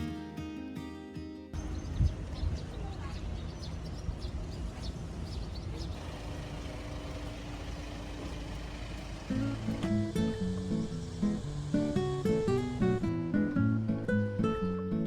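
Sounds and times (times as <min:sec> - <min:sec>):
music: 0:00.0 - 0:01.6, 0:09.3 - 0:15.0
low outdoor rumble: 0:01.6 - 0:14.5.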